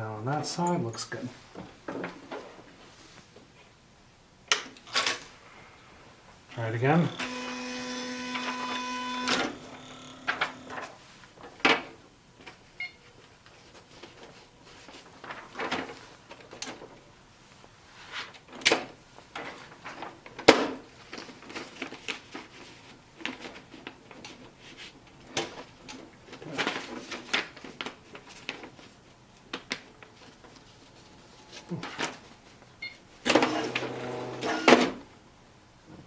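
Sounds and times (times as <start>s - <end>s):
typewriter clicks and clunks: 33.3s - 35.0s.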